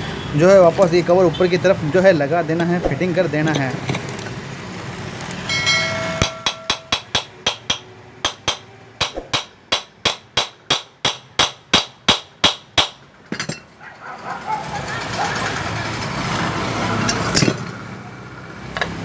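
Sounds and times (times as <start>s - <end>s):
short metallic ring: 5.4s - 7.0s
hammer striking metal cover: 5.5s - 13.7s.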